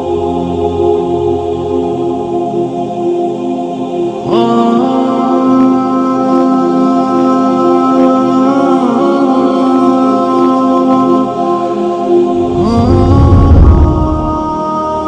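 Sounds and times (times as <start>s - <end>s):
voice singing long held notes: 0.0s - 15.0s
steady drone: 11.7s - 15.0s.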